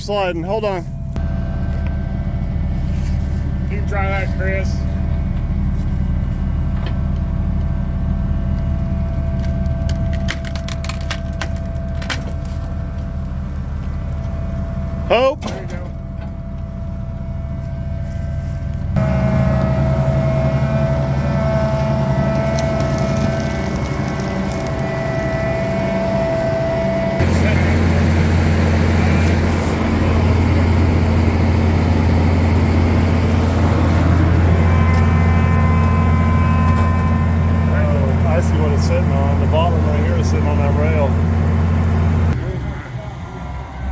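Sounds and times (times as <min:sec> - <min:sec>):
engine rumbling with whine: 0:00.0 - 0:43.9
sharp cracks and knocks: 0:09.4 - 0:12.6.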